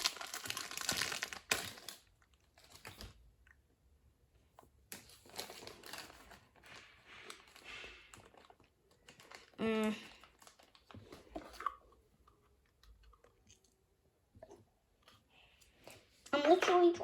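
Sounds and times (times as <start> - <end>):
plastic packaging crinkling: 0.0 - 3.2, 5.0 - 11.7.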